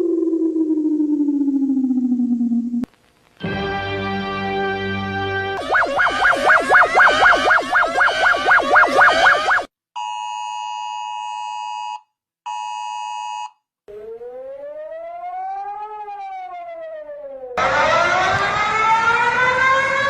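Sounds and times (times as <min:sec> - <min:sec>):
rising siren sweep: 0:00.0 - 0:02.8, 0:05.6 - 0:09.7, 0:13.9 - 0:20.0
siren wail tone: 0:00.0 - 0:02.8, 0:05.6 - 0:09.7, 0:13.9 - 0:20.0
fast warbling alert tone: 0:05.6 - 0:09.7
multi-tone alert beep: 0:05.6 - 0:09.7.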